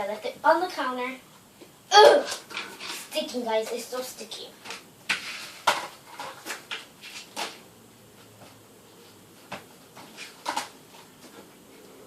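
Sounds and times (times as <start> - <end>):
handling rustles and knocks: 4.6 - 12.0.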